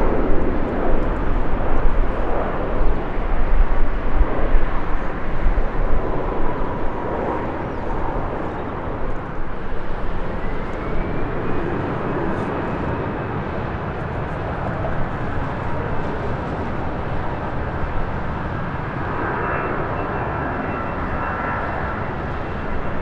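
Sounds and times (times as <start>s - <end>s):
faint engine whine: 0.0s - 23.0s
jet engines rushing: 0.0s - 23.0s.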